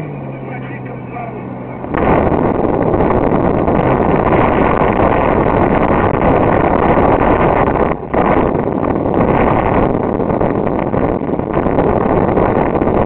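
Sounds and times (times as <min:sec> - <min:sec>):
off-road vehicle rushing noise: 0:00.0 - 0:13.0
wind buffeting microphone: 0:00.0 - 0:13.0.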